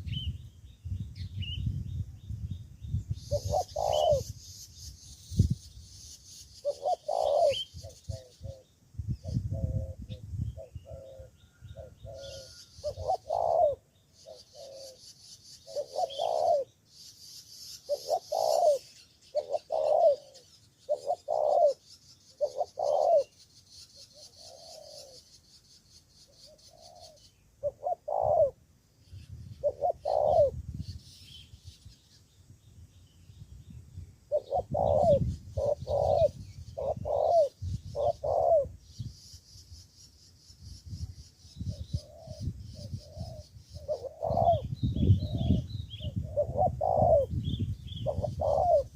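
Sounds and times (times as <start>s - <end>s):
dove cooing: 3.3s - 4.4s, 6.6s - 16.8s, 17.8s - 23.4s, 24.0s - 25.3s, 26.4s - 28.6s, 29.6s - 30.6s, 34.3s - 38.8s, 41.7s - 48.9s.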